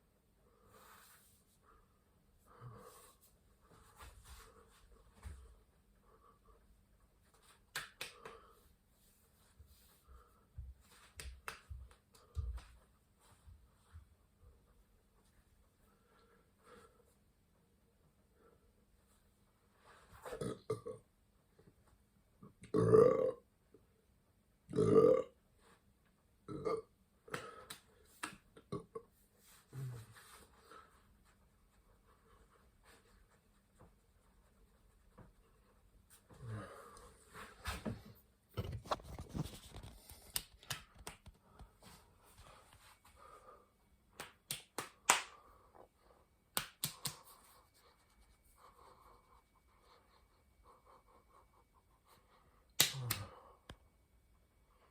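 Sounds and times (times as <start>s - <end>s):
man burping: 20.4s - 21.0s, 22.7s - 23.4s, 24.7s - 25.4s, 26.5s - 26.9s, 28.7s - 29.1s
sharp clicks or smacks: 46.6s - 47.2s, 52.8s - 53.3s.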